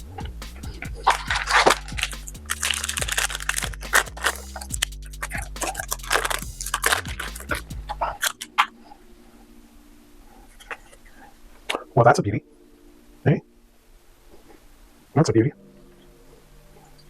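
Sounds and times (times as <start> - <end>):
music with bass and drums: 0.0 - 8.1
card wrappers crinkling: 1.1 - 4.7, 5.3 - 7.4.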